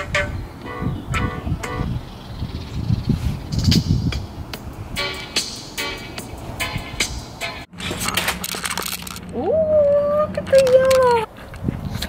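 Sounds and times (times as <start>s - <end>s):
music playing: 0.0s - 2.0s, 3.8s - 7.7s.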